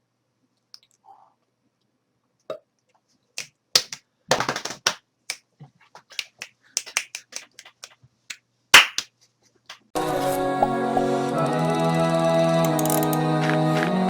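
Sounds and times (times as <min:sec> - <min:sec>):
sharp clicks and snaps: 0:03.4 - 0:05.4, 0:06.0 - 0:07.9.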